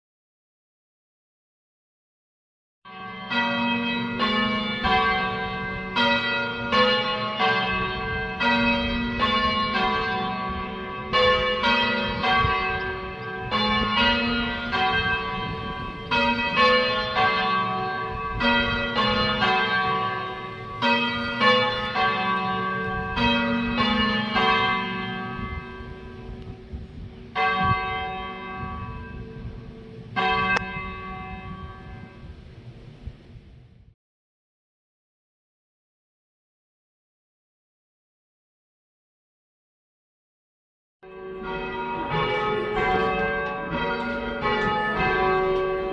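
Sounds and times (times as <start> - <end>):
church bells ringing: 2.9 - 32.3, 41.0 - 45.9.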